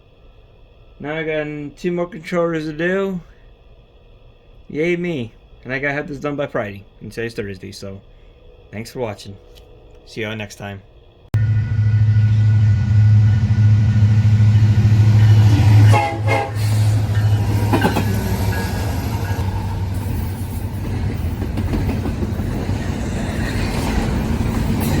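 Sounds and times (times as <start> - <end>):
train low drone: 0.0 - 25.0
rough rumbling noise: 10.8 - 25.0.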